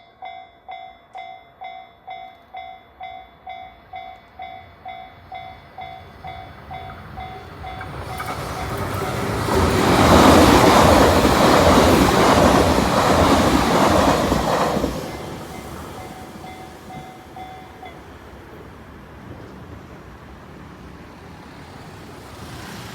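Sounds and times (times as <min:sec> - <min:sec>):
level crossing warning bell: 0:00.0 - 0:09.4, 0:15.1 - 0:18.2
train passing: 0:00.2 - 0:22.9.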